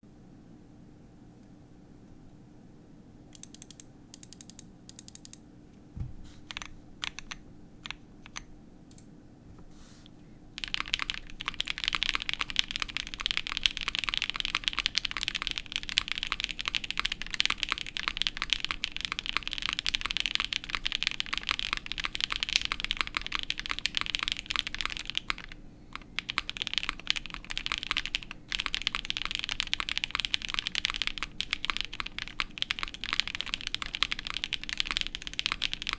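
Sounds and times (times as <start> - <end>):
mechanical keyboard typing: 3.4 - 5.4, 6.5 - 9.0, 10.6 - 35.9.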